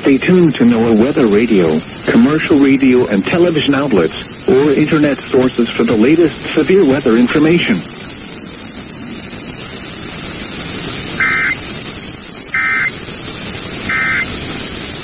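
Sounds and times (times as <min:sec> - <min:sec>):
radio static hissing: 0:00.0 - 0:15.0
data tone bursts: 0:11.2 - 0:11.7, 0:12.5 - 0:13.0, 0:13.8 - 0:14.4.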